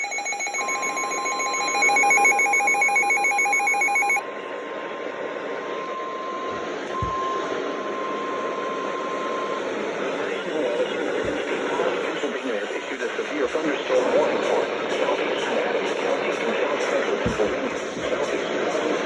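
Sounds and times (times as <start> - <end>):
rapidly pulsing electronic alarm beep: 0.0 - 4.2
steady warning alarm tone: 0.0 - 4.2
radio hiss: 7.6 - 19.0.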